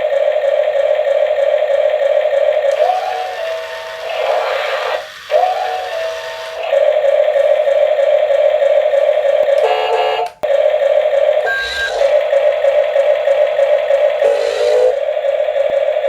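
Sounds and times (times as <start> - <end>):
electronic tones: 2.7 - 7.8, 11.4 - 15.1
toy buzzy electronic tone: 2.7 - 10.4, 11.4 - 15.8.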